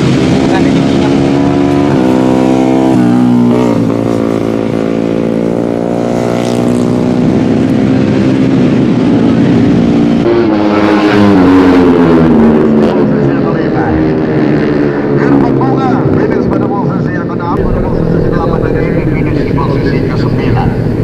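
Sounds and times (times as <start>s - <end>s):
motorcycles revving at high revs: 0.0s - 16.5s.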